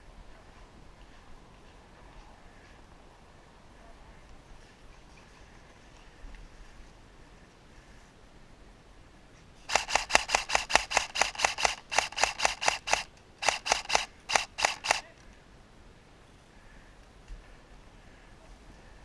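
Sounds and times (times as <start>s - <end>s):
airsoft rifle shots: 9.7s - 15.1s.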